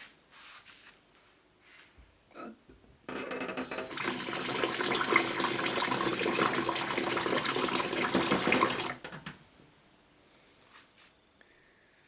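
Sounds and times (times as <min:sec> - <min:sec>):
water filling a glass: 0:03.7 - 0:09.0.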